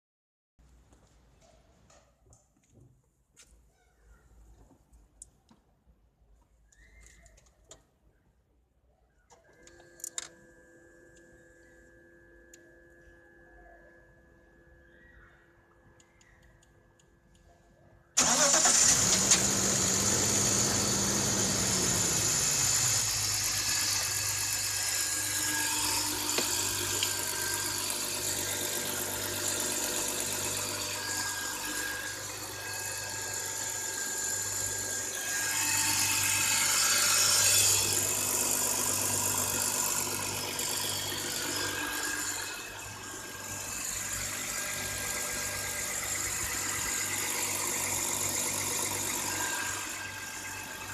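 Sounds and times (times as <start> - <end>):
car engine starting and idling: 18.2 - 31.9.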